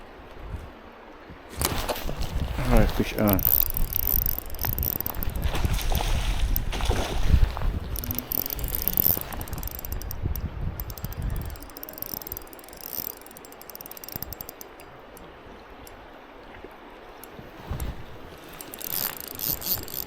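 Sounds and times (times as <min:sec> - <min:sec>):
low rumbling handling noise: 0:01.6 - 0:14.9, 0:17.4 - 0:20.0
fishing reel clicking: 0:02.6 - 0:06.7, 0:07.5 - 0:16.0, 0:17.2 - 0:20.0.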